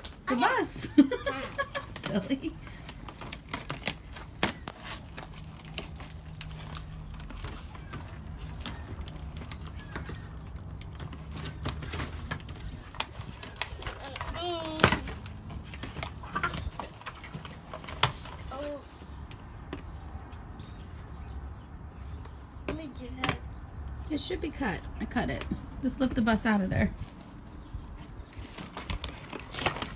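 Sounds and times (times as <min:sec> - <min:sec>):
packaging clicks and crinkles: 0:01.2 - 0:21.1, 0:27.0 - 0:29.9.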